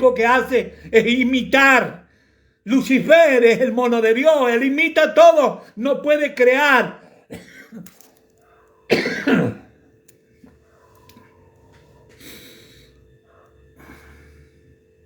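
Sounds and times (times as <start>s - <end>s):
steady low hum: 7.0s - 15.0s
man coughing: 7.1s - 7.9s, 8.9s - 9.7s.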